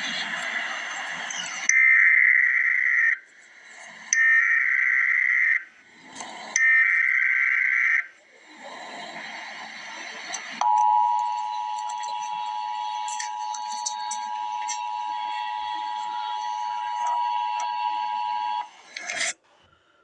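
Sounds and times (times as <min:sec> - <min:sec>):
buzzy digital data tones: 0:00.0 - 0:19.3
two-tone attention signal: 0:09.8 - 0:18.7.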